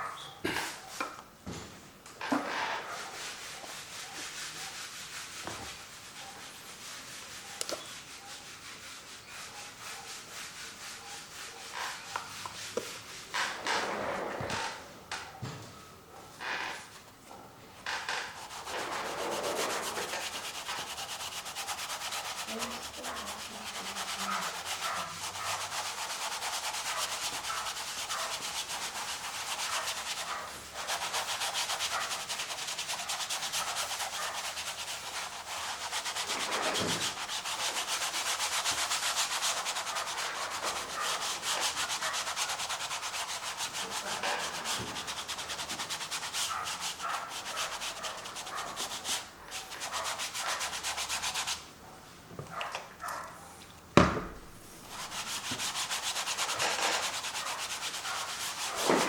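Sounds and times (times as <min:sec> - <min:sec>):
paintbrush scrubbing on canvas: 0:02.4 - 0:14.8, 0:17.9 - 0:51.7, 0:54.6 - 0:59.0.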